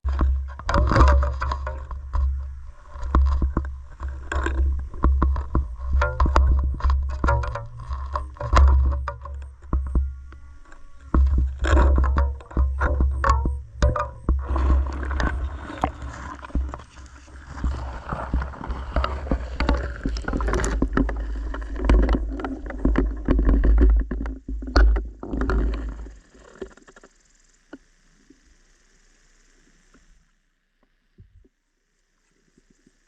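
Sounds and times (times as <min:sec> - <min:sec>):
water churning underwater: 0:00.0 - 0:26.8
faint steady hiss: 0:24.6 - 0:33.0.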